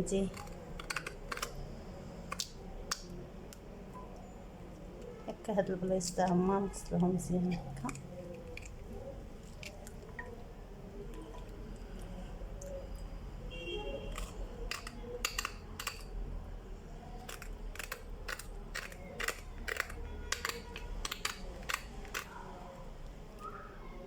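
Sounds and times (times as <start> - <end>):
knife clicking on dried root: 0.2 - 1.6, 2.3 - 3.7, 14.1 - 16.2, 17.2 - 22.4.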